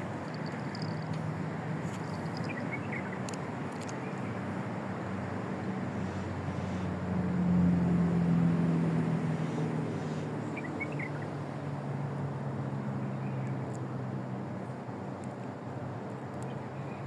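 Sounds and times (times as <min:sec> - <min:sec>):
passing motor vehicle engine: 0:04.2 - 0:17.0.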